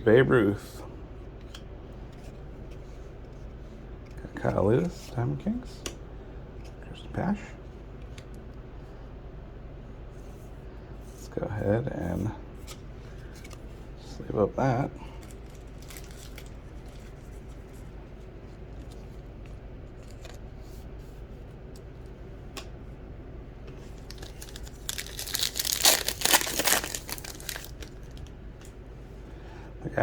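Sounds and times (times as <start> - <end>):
wrapper tearing and crinkling: 15.2 - 16.5, 24.0 - 28.3.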